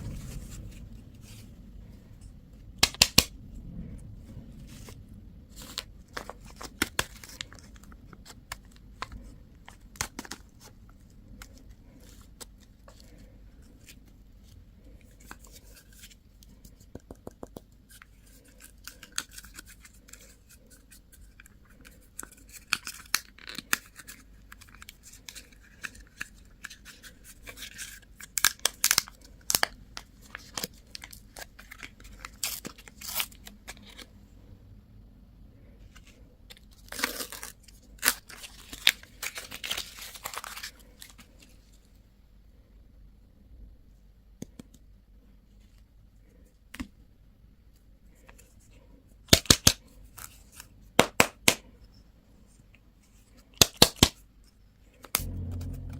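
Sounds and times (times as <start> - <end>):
candy packaging crinkling: 5.5 - 13.2, 18.0 - 34.1, 36.0 - 41.6.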